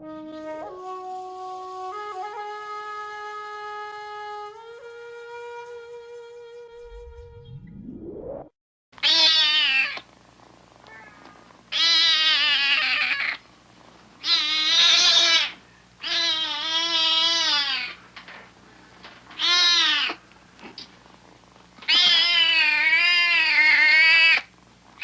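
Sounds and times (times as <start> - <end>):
short rising sweep: 6.6 - 8.6
cat yowling: 9.0 - 10.1, 10.9 - 13.4, 14.2 - 18.0, 19.4 - 20.2, 21.8 - 24.5.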